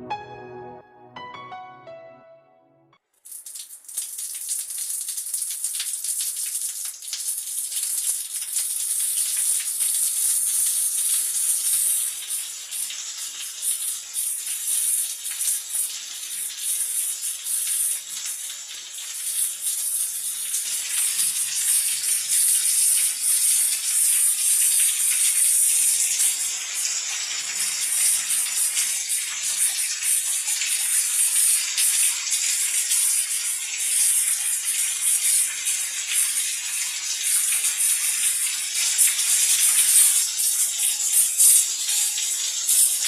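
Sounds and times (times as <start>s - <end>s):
water spraying from shower head: 3.3s - 43.0s.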